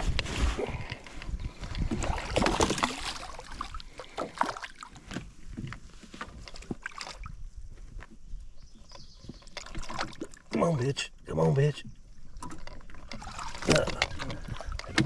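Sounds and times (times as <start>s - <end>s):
water splashing: 1.8s - 5.1s, 6.4s - 7.4s, 9.3s - 15.0s
knocks and clicks on a boat: 8.0s - 15.0s.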